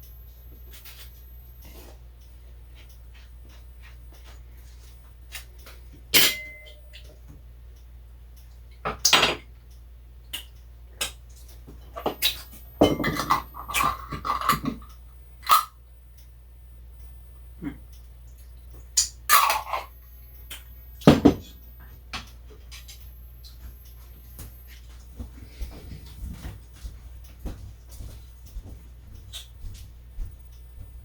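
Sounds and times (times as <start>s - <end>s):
low steady hum: 0.0s - 31.0s
dishes and utensils clattering: 6.2s - 7.0s, 12.0s - 14.8s
sharp ringing clink: 6.2s - 7.0s.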